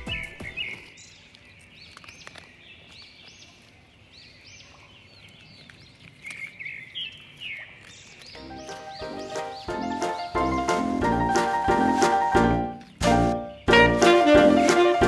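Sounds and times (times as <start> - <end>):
birds chirping faintly: 0.0 - 15.0
music: 8.4 - 15.0.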